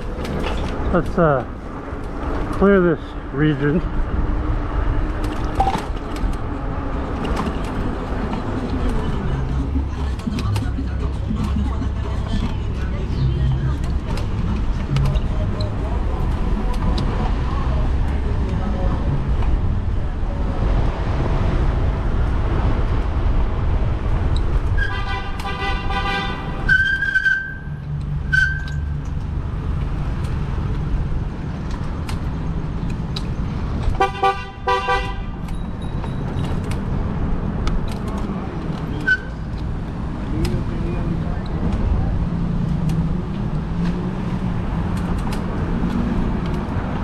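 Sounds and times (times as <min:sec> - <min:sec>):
road and wind noise: 0:00.0 - 0:47.0
vehicle horn: 0:24.8 - 0:27.6, 0:34.0 - 0:35.4.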